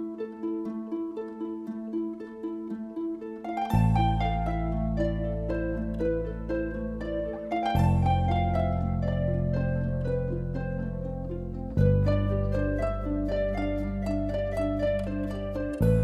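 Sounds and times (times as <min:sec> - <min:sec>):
plucked notes: 0:00.0 - 0:16.0
held low chords: 0:03.5 - 0:16.0.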